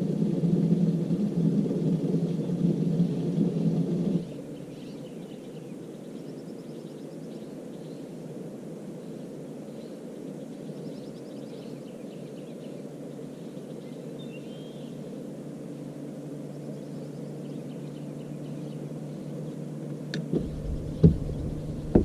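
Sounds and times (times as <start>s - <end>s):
low background rumble: 0.0s - 5.0s, 19.0s - 22.0s
small birds chirping and trilling: 4.2s - 8.2s, 9.0s - 19.8s.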